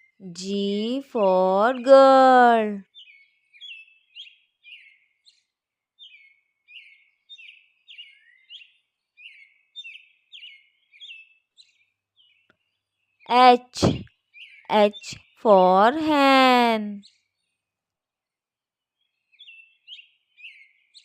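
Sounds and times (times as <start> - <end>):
small bird chirping: 2.8 - 15.4, 19.0 - 21.0.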